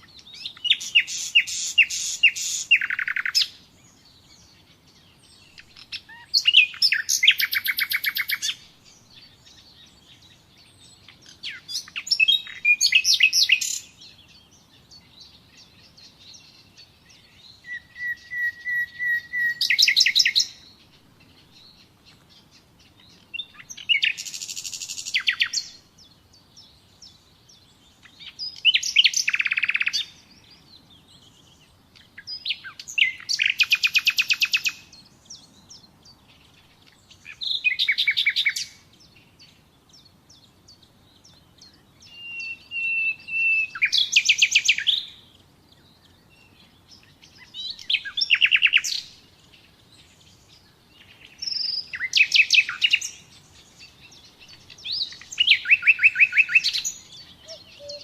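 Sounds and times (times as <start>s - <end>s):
nightingale singing: 0.0s - 58.0s.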